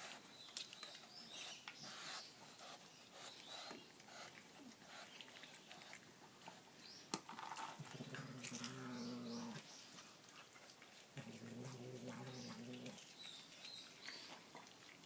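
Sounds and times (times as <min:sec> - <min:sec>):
low animal growl: 0:07.8 - 0:09.7, 0:11.2 - 0:13.0.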